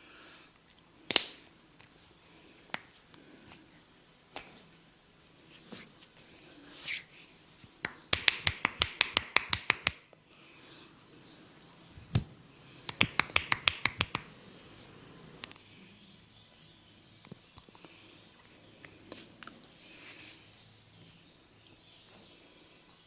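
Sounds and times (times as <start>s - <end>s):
hand slap: 1.1s - 1.4s, 7.8s - 10.1s, 12.9s - 14.3s
hands tapping on forehead: 7.8s - 10.0s, 12.9s - 14.3s.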